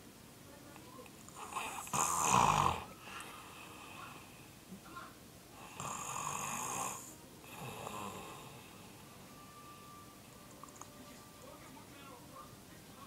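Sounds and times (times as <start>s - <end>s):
man snoring loudly: 1.5s - 2.9s, 5.7s - 8.7s.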